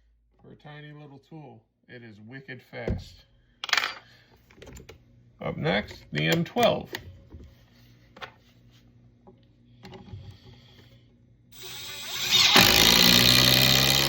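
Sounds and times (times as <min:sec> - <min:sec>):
impact driver hammering: 0:12.2 - 0:14.0.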